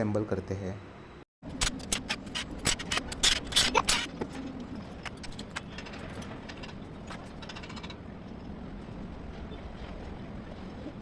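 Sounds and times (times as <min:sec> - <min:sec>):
metallic clanks and clicks: 0:05.0 - 0:08.0.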